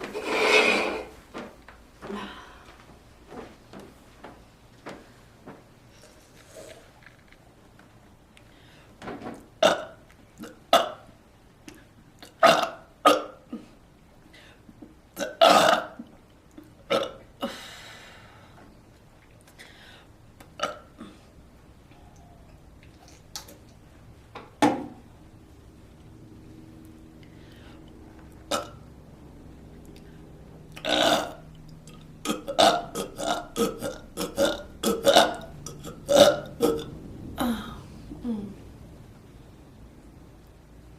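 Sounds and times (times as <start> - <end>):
person burping: 9.6 - 11.1, 12.2 - 13.7, 15.2 - 16.1, 16.7 - 17.5, 20.6 - 21.2, 28.5 - 28.8, 30.8 - 31.4, 32.2 - 38.6.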